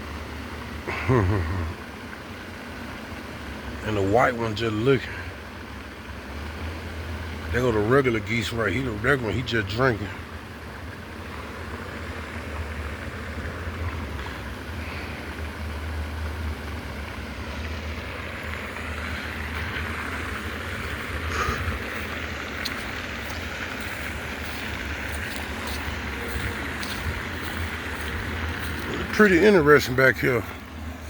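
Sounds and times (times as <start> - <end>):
wind buffeting microphone: 19.4 - 29.2.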